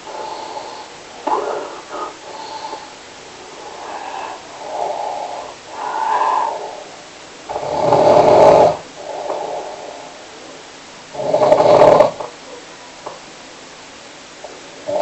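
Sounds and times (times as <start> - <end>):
person snoring: 0.0 - 10.2, 11.1 - 12.3.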